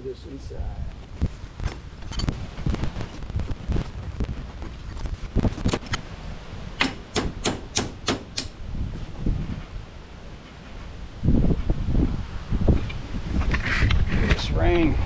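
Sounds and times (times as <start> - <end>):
sharp clicks: 0.9 - 6.0.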